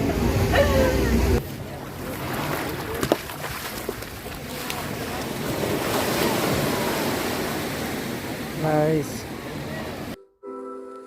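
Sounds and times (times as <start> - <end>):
sea water sloshing: 1.4 - 8.6.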